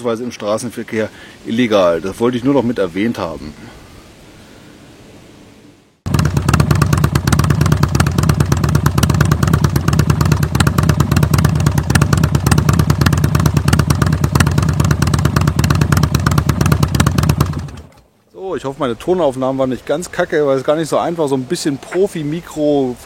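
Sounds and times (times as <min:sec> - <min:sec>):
motorcycle engine running: 0:06.1 - 0:18.0.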